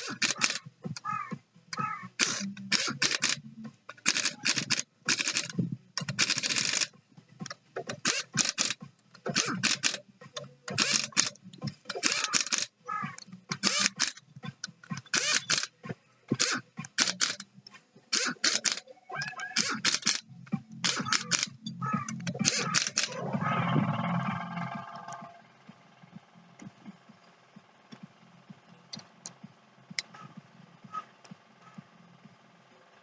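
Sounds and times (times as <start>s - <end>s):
sharp clicks and scraping: 0.0s - 25.3s
low hum: 3.3s - 33.0s.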